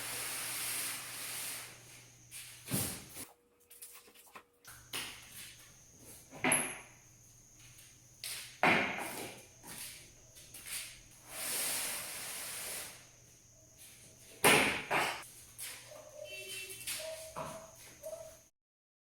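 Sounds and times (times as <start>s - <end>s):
rushing sliding hiss: 0.0s - 2.0s, 11.2s - 13.1s.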